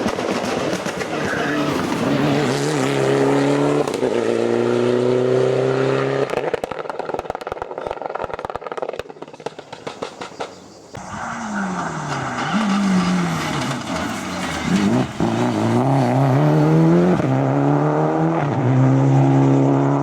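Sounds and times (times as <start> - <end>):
car engine accelerating hard: 1.0 - 6.4, 11.0 - 20.0
exhaust crackling pops: 3.8 - 4.2, 6.0 - 15.8.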